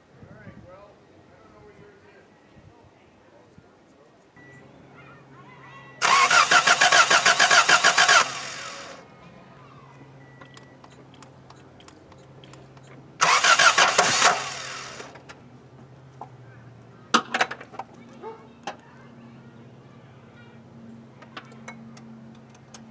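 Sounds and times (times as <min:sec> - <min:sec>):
car engine cranking: 0:06.0 - 0:09.0, 0:13.2 - 0:15.2.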